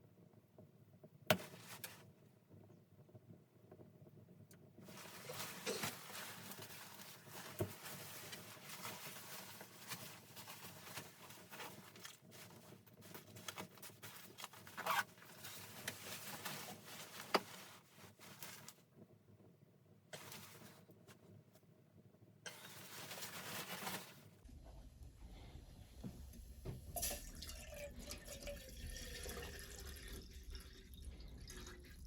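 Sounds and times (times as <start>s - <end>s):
rustling and scraping: 4.8s - 18.8s, 20.2s - 21.2s, 22.5s - 24.4s.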